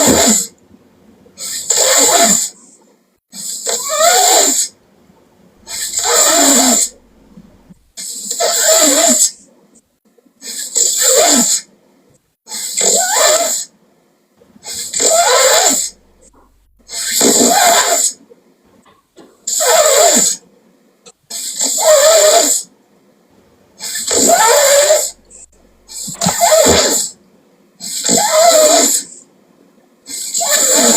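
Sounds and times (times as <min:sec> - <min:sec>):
person snoring loudly: 0:05.6 - 0:07.0.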